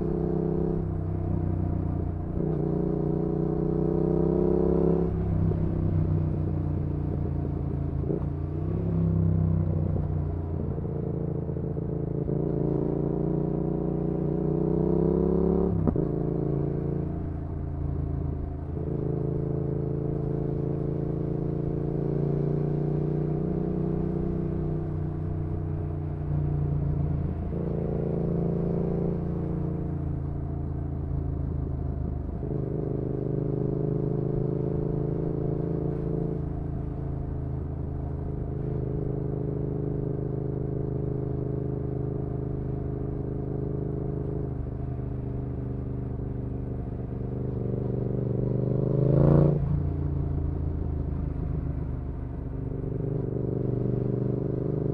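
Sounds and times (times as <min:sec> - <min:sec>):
motorcycle engine accelerating: 0:00.0 - 0:54.9.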